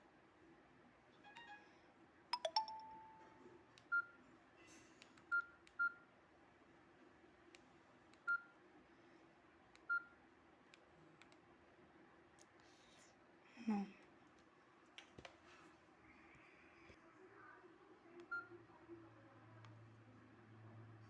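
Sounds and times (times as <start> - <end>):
phone keypad beeps: 2.4 - 4.1.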